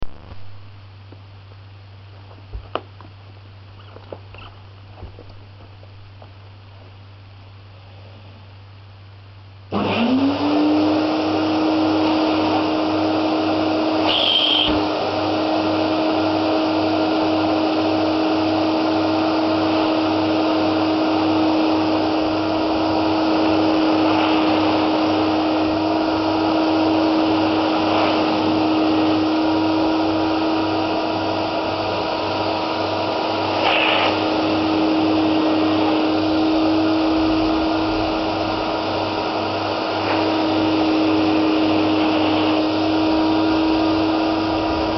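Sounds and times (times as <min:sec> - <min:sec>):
carpet washer motor running: 0:09.7 - 0:44.9
higher rushing surges: 0:22.6 - 0:30.0, 0:33.1 - 0:44.9.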